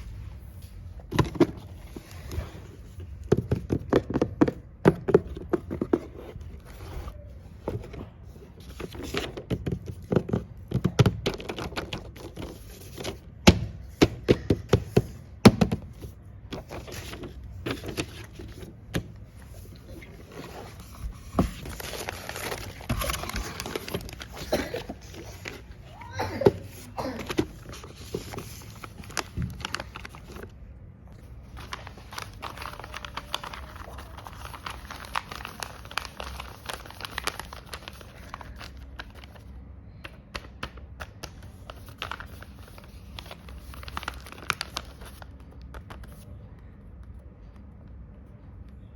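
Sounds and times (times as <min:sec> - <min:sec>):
paper rustling and crinkling: 0:15.8 - 0:30.6, 0:31.2 - 0:39.5, 0:40.4 - 0:46.3.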